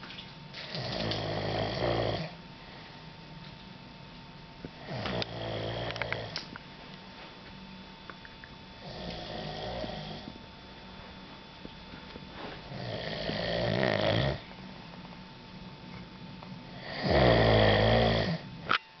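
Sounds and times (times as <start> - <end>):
man snoring: 0.8 - 2.4, 4.8 - 6.4, 8.8 - 10.3, 12.7 - 14.5, 16.7 - 18.5.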